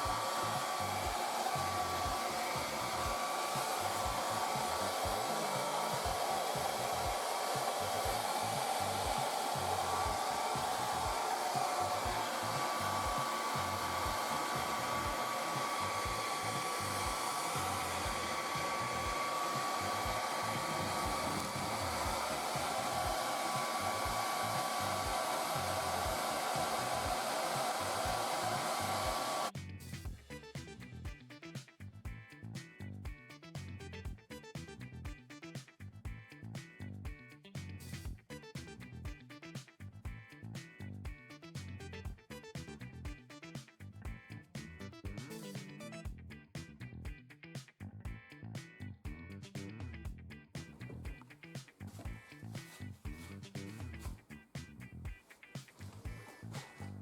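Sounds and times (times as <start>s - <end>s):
small electric motor blowing air: 0.0s - 29.6s.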